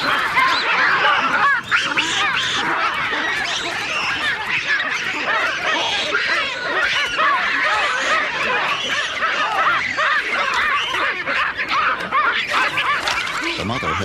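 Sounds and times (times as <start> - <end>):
baboons screaming: 0.0 - 14.0.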